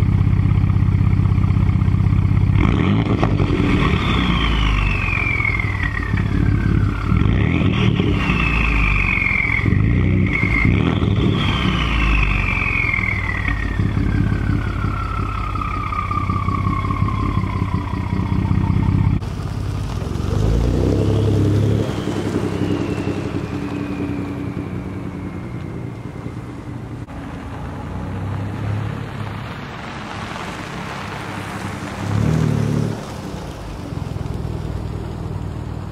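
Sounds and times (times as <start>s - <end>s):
engine revving: 0.0s - 30.0s
turbo whistling: 1.1s - 19.2s, 20.5s - 27.1s.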